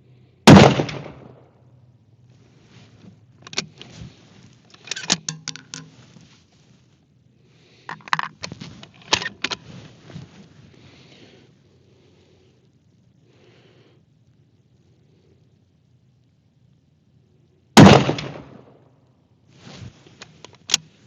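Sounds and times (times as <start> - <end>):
rifle bolt clicking and clacking: 3.5 - 3.7, 4.7 - 5.9.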